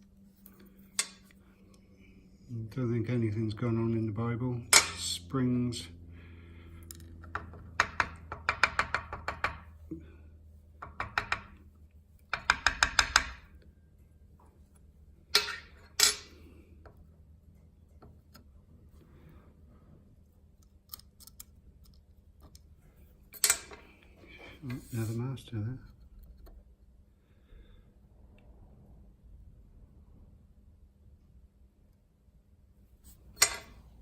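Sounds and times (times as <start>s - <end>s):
lock pins clicking and tapping: 6.8s - 9.7s, 10.8s - 13.7s, 15.3s - 16.4s, 20.6s - 22.7s, 23.3s - 24.0s, 33.3s - 33.8s.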